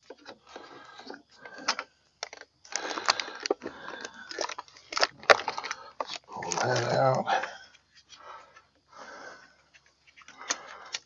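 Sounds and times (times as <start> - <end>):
plastic mirror housing rattling: 1.6 - 7.2.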